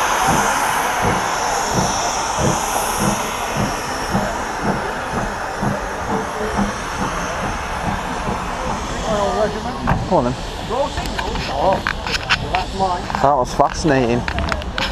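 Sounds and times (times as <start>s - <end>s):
train running: 0.0s - 14.9s.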